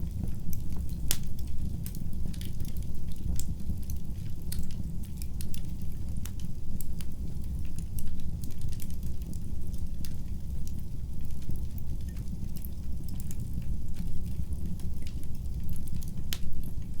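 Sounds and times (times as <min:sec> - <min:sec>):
low rumble of flames: 0:00.0 - 0:17.0
wood fire crackling: 0:00.0 - 0:17.0.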